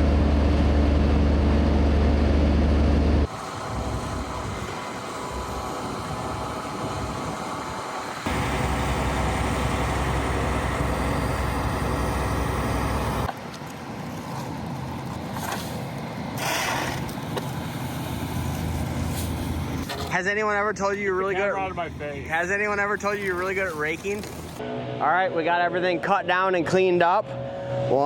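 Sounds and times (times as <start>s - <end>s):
heavy equipment engine running: 0.0s - 16.4s.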